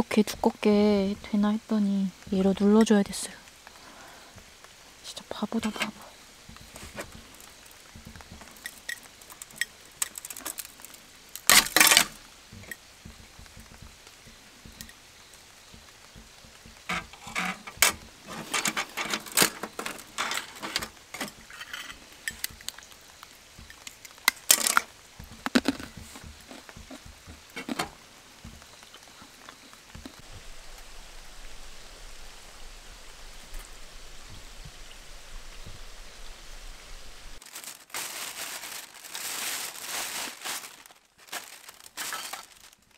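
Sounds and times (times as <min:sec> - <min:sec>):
rain hiss: 0:00.0 - 0:42.9
metal utensils clinking: 0:16.9 - 0:22.8, 0:23.6 - 0:24.9.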